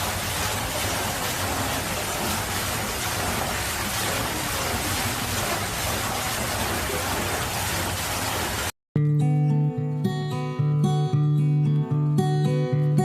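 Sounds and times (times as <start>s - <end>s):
water rushing into a tank: 0.0s - 8.8s.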